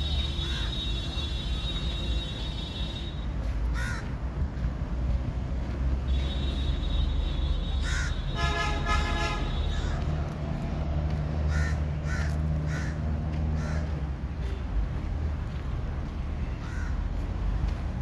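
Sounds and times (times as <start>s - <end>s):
crows cawing: 0.4s - 0.8s, 3.7s - 4.1s, 7.8s - 8.2s, 9.7s - 10.1s, 11.5s - 14.0s, 16.6s - 17.0s.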